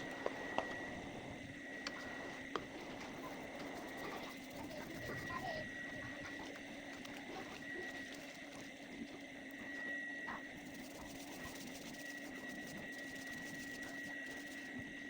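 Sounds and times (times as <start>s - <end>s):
machine whine and hum: 0.0s - 15.0s.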